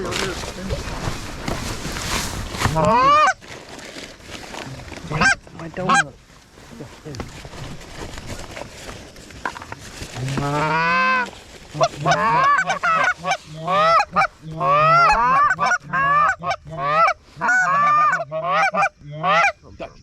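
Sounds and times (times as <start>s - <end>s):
geese honking: 2.7s - 3.4s, 5.1s - 6.2s, 10.4s - 19.6s.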